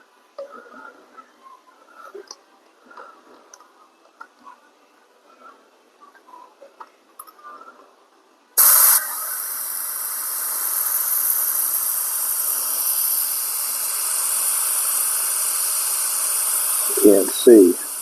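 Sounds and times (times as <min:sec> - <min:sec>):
air hissing from tire: 0:08.6 - 0:18.0.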